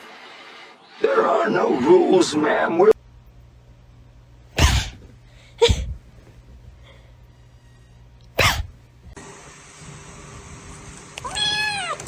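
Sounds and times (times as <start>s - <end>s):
person sneezing: 4.6s - 5.0s, 8.4s - 8.7s.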